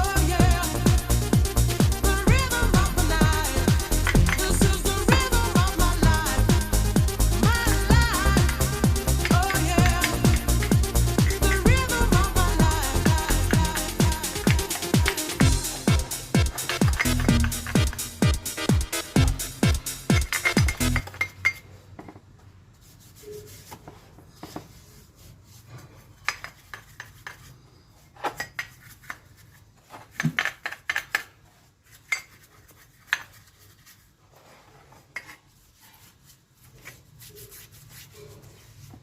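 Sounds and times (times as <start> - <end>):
light rubbing and scraping: 31.3 - 39.0.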